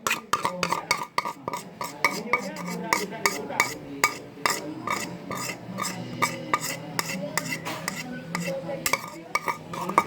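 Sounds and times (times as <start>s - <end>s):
squishy mixture being stirred: 0.0s - 10.0s.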